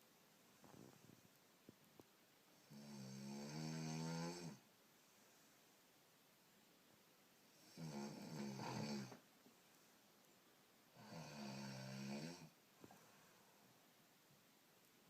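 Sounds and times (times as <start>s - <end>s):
woman snoring: 2.6s - 4.6s, 7.6s - 9.2s, 11.0s - 12.6s.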